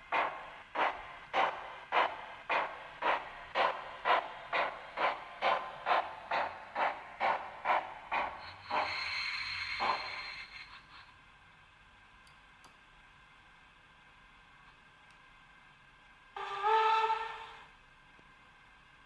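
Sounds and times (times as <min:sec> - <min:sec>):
steam locomotive chuffs: 0:00.0 - 0:11.2
steam hiss with high tone: 0:04.6 - 0:11.1.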